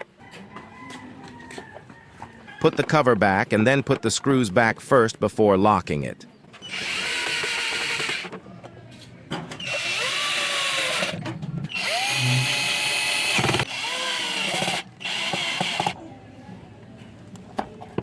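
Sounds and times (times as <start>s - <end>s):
cordless drill driving screws: 6.6s - 8.3s, 9.6s - 16.0s.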